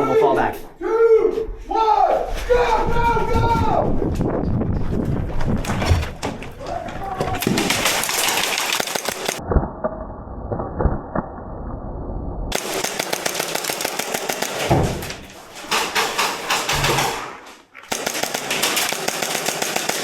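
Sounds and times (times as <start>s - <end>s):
clatter of players moving: 4.1s - 9.4s
airsoft guns firing: 7.4s - 9.4s, 12.5s - 15.0s, 17.9s - 20.0s.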